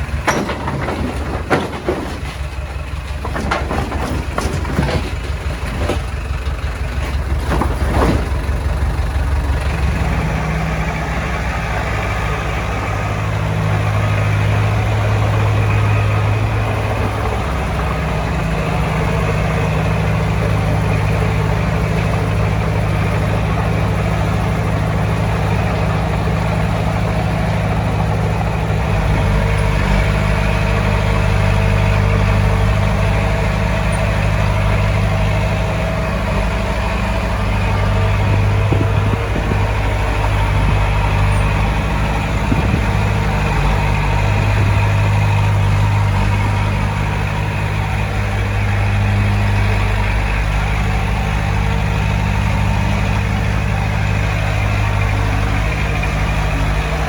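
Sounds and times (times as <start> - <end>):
metal clanks and knocks: 0.0 - 9.8
heavy diesel engine droning: 0.0 - 57.0.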